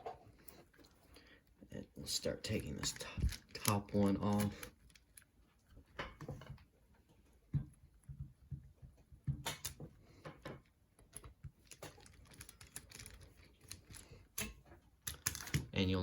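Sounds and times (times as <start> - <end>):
screwdriver and metal parts clicking: 2.5 - 5.3, 11.0 - 15.8.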